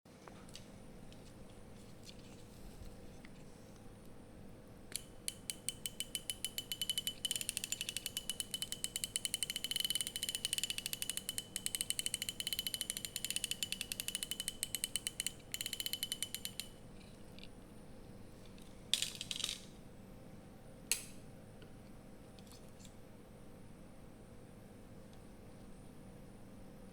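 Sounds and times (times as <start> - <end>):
fishing reel drag clicking: 5.3 - 16.7.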